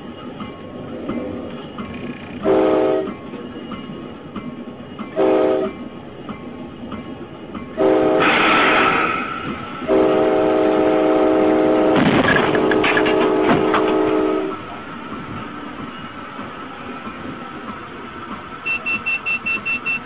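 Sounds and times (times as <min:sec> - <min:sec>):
locomotive horn blasts: 0:02.4 - 0:03.2, 0:05.2 - 0:05.8, 0:07.8 - 0:09.0, 0:09.8 - 0:14.6, 0:18.6 - 0:20.0
loud rushing noise: 0:08.2 - 0:09.9.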